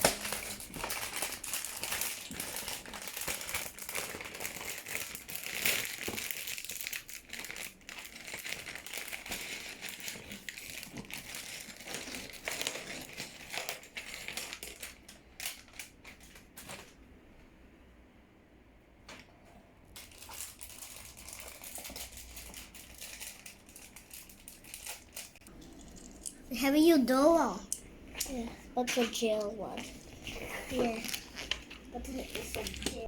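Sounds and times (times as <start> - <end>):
plastic bag crinkling: 0.0 - 16.8, 20.0 - 26.4.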